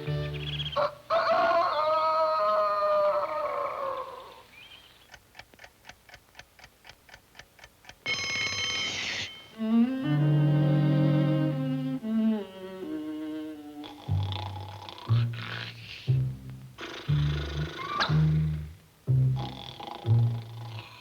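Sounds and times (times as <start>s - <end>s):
cartoon score music: 0.0s - 0.8s, 9.6s - 20.6s
mechanical clock ticking: 5.0s - 9.7s
alarm clock bell ringing: 8.0s - 9.8s.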